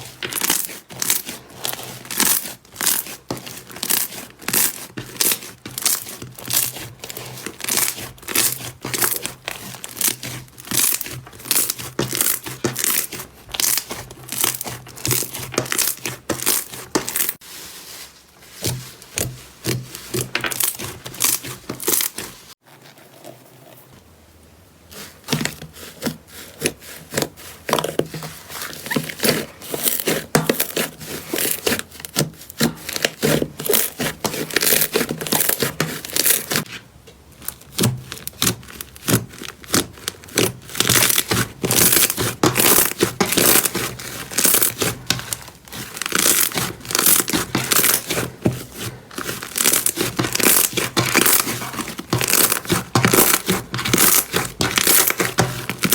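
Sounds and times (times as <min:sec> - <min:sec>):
slime crackling and popping: 0:00.2 - 0:17.4, 0:37.4 - 0:55.9.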